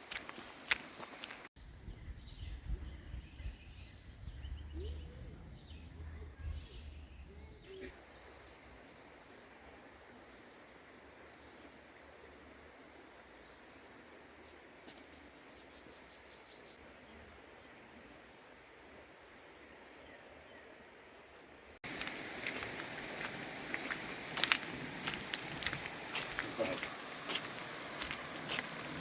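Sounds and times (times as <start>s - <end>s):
low rumbling outdoor noise: 1.6s - 14.7s
faint bird chirps: 1.9s - 8.6s.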